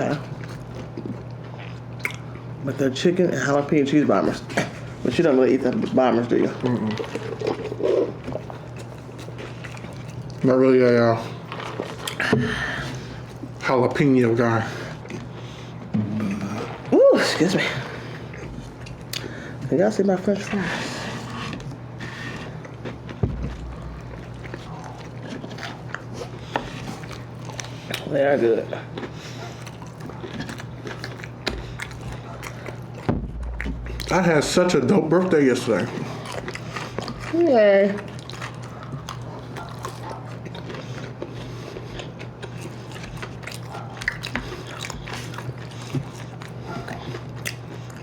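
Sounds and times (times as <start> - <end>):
chewing: 0.0 - 2.8, 3.4 - 16.9, 17.6 - 20.3, 20.9 - 48.0
steady low hum: 0.0 - 48.0
sharp knock and low thud: 23.2 - 24.1, 33.1 - 34.1.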